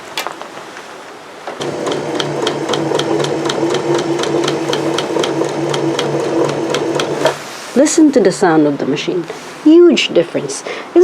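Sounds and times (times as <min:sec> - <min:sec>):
sewing machine stitching: 0:01.6 - 0:07.5.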